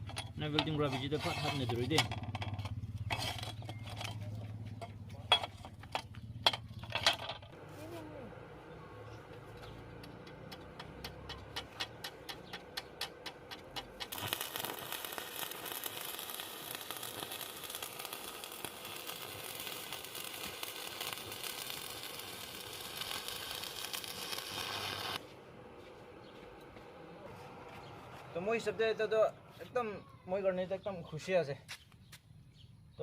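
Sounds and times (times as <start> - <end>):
welding arc crackling: 9.9 - 25.2.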